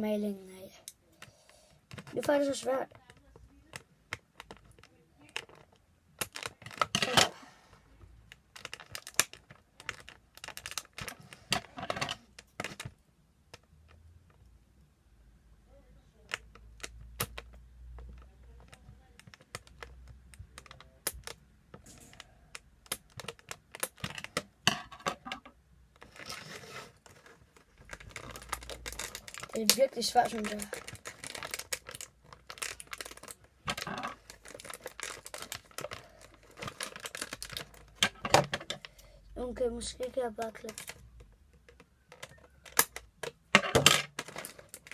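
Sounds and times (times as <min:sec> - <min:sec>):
plastic packaging clicking: 0:01.9 - 0:07.3, 0:08.3 - 0:13.7, 0:16.2 - 0:39.0, 0:40.2 - 0:44.9
plastic crinkling rustles: 0:08.2 - 0:13.0, 0:25.9 - 0:38.9, 0:44.1 - 0:44.9.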